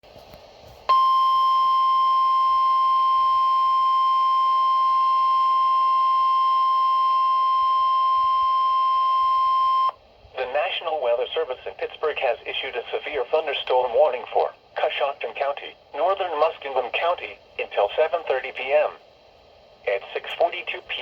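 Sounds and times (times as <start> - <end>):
steady alarm tone: 0.9 - 10.0.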